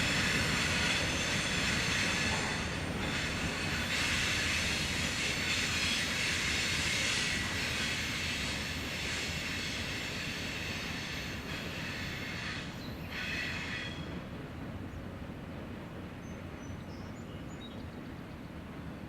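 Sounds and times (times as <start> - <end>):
hiss: 0.0 - 13.9
freight cars rolling on rails: 0.0 - 15.3
faint high wheel squeal: 0.1 - 14.2.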